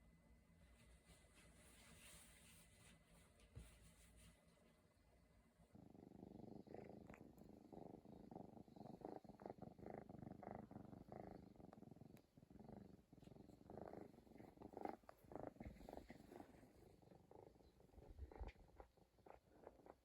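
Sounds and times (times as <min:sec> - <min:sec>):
kitten purring: 0:05.5 - 0:20.0.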